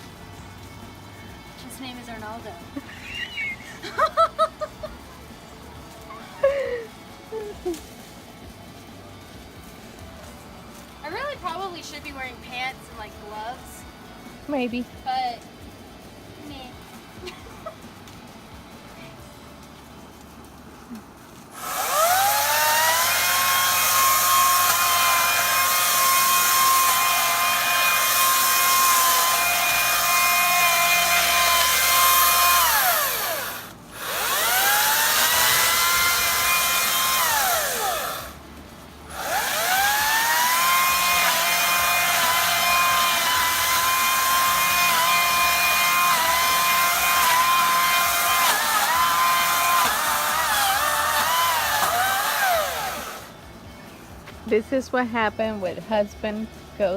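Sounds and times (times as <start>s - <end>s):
chainsaw cutting bushes: 20.9s - 53.4s.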